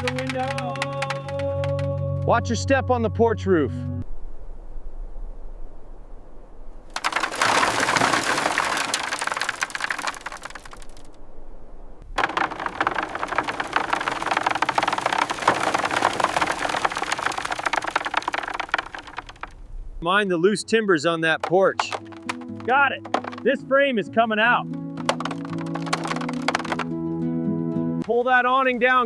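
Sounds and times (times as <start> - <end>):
clicking and scraping on wooden boards: 0.0 - 1.8, 7.0 - 11.0, 12.2 - 19.6, 21.4 - 23.5, 25.0 - 26.9.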